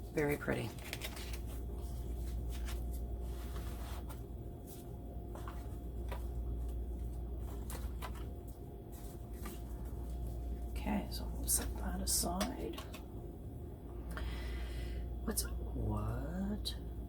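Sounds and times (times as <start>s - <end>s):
steady low hum: 0.0s - 17.0s
paper stickers rustling: 0.1s - 10.6s.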